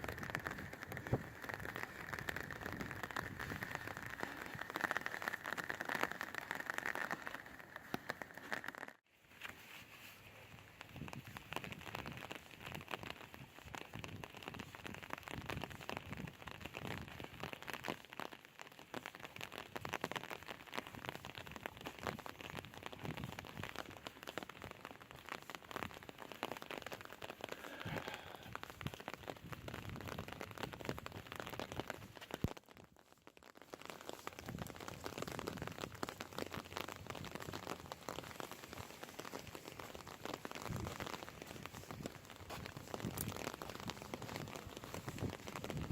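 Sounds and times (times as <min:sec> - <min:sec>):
rain pattering: 0:00.0 - 0:09.0, 0:10.0 - 0:45.9.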